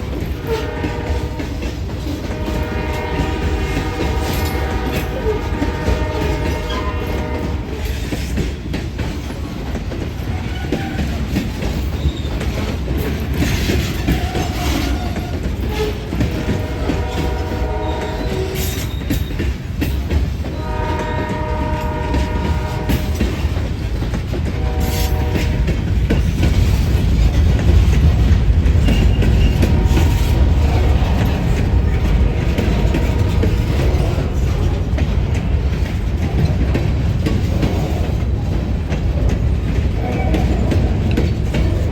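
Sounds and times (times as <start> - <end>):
train horn blasts: 0.0 - 8.0, 14.1 - 19.2, 20.5 - 23.6, 24.4 - 25.9, 28.8 - 35.9
locomotive engines rumbling: 0.0 - 41.9
wheels clattering on rail: 0.0 - 41.9.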